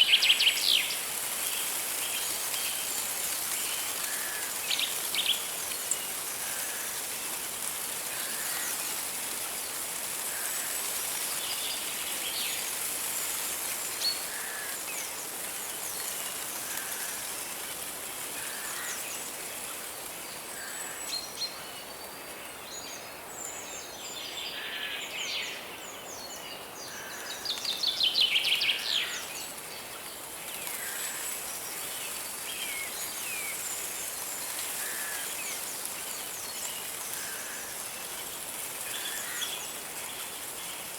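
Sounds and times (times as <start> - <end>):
river rushing: 0.0 - 20.0.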